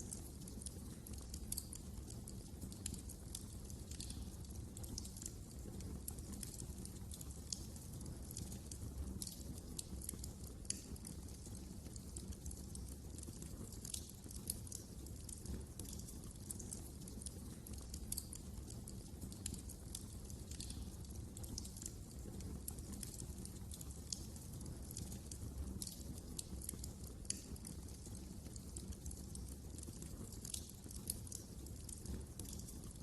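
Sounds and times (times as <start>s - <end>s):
wood fire crackling: 0.0s - 33.0s.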